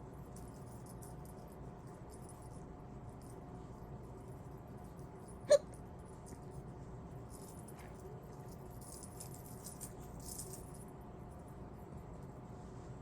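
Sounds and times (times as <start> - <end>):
woman hiccuping: 5.5 - 5.8.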